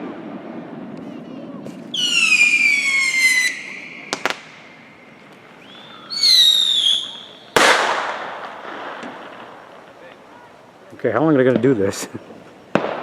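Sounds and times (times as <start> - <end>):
whistling firework: 0.0 - 10.5, 12.2 - 13.0
firework cracks: 0.0 - 13.0
loud firework bang: 1.6 - 9.6, 12.7 - 13.0.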